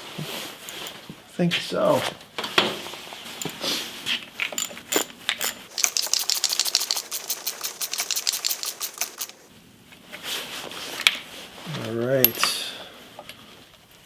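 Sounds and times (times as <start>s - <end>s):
parts knocking and clattering: 4.4s - 9.5s
quick sharp clicks: 5.7s - 9.5s.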